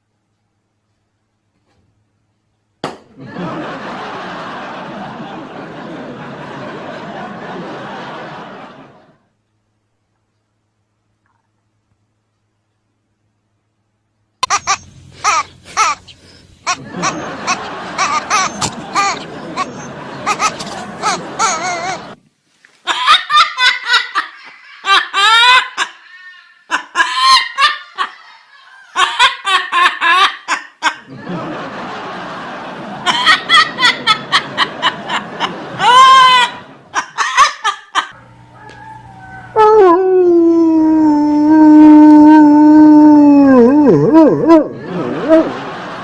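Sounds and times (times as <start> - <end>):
hearty laughter: 3.2 - 9.2, 14.4 - 22.2, 22.9 - 39.5, 43.9 - 46.0.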